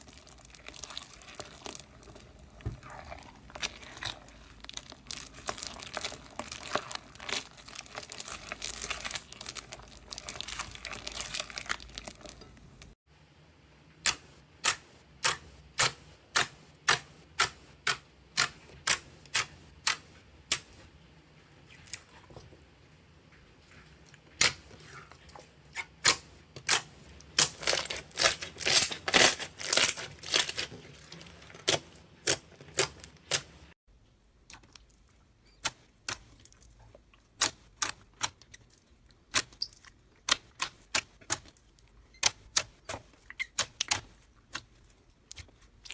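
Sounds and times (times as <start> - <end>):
slime crackling: 0.0 - 13.0, 26.0 - 33.7.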